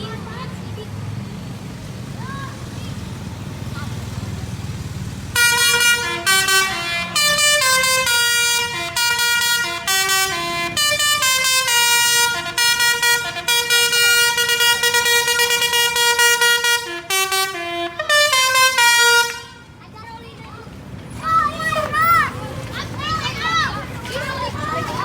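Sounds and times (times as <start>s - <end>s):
musical air horn melody: 5.4s - 19.6s.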